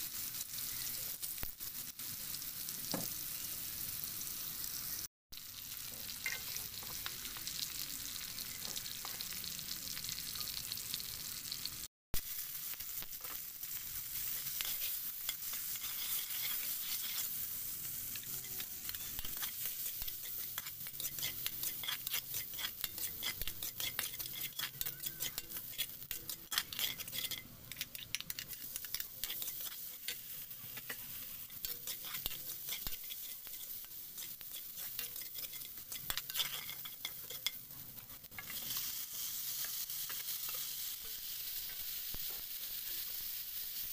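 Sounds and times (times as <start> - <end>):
food sizzling in a pan: 0.0 - 43.9
utensil scraping against pan: 14.2 - 17.5, 18.1 - 41.2.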